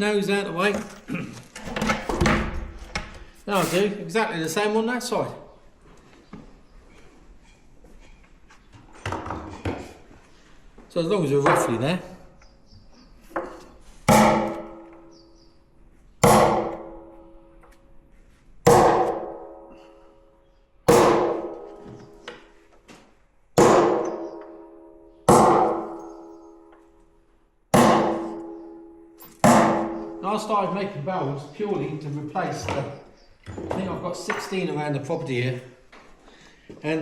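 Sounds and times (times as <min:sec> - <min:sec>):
hammer striking steel hoop: 0:14.1 - 0:15.0, 0:16.2 - 0:17.4, 0:18.7 - 0:20.0, 0:20.9 - 0:22.2, 0:23.6 - 0:26.7, 0:27.8 - 0:30.2.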